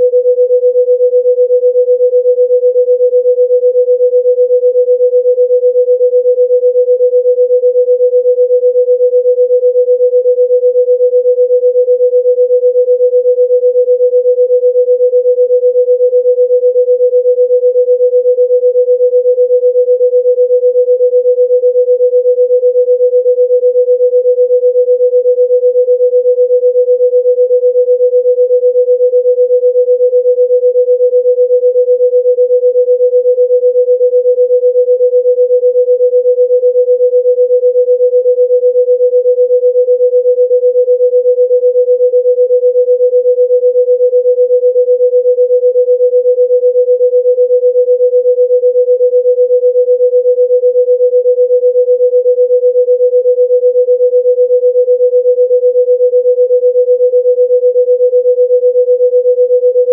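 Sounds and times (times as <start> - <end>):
pure sine tone: 0.0 - 59.9.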